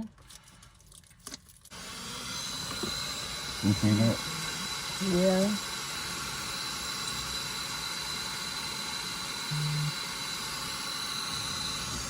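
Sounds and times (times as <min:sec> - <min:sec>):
hair dryer blowing: 0:01.7 - 0:12.0.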